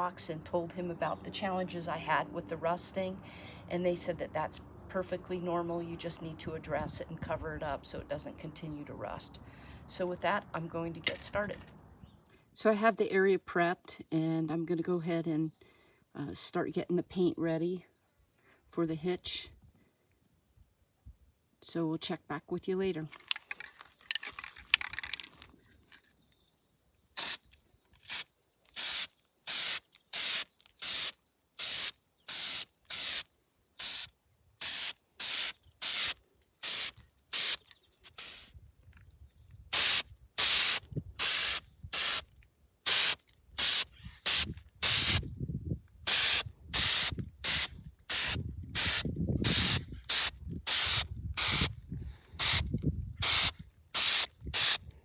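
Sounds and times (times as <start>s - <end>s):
spray paint can hissing: 23.3s - 25.3s, 27.2s - 33.2s, 33.8s - 38.5s, 39.7s - 42.2s, 42.8s - 45.2s, 46.1s - 51.7s, 52.4s - 54.8s.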